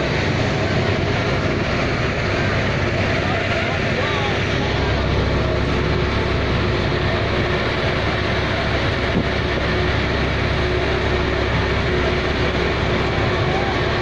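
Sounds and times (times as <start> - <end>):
boat engine droning: 0.0 - 14.0
wind noise: 4.4 - 14.0.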